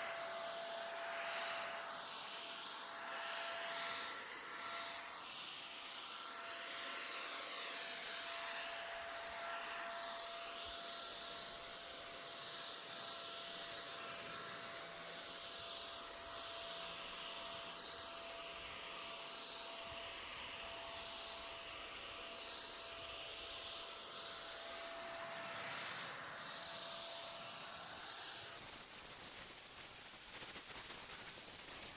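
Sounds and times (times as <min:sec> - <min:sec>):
spray gun motor whine: 0:00.1 - 0:31.9
hiss of spraying paint: 0:28.6 - 0:31.9.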